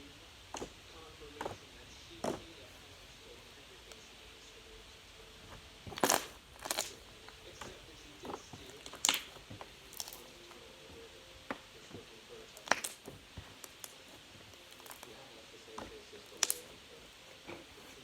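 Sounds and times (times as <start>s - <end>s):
slime wet crackles and pops: 5.9s - 10.5s, 12.5s - 16.8s.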